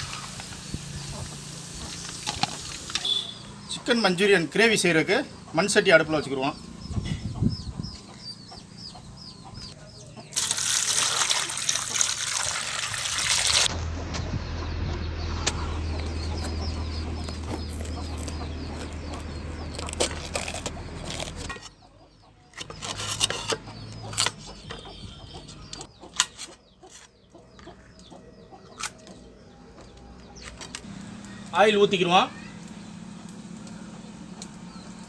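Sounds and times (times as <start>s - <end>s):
chickens clucking: 1.0s - 10.4s, 13.7s - 20.1s, 20.7s - 30.7s.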